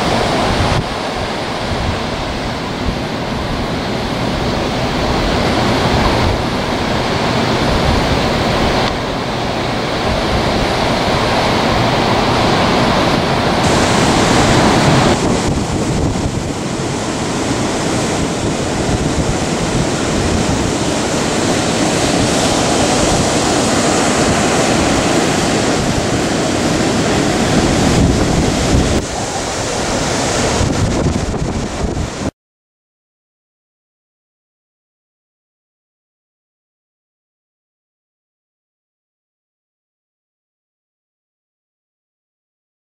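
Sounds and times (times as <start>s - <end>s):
storm surf breaking: 0.0s - 32.3s
wind buffeting microphone: 0.0s - 32.3s.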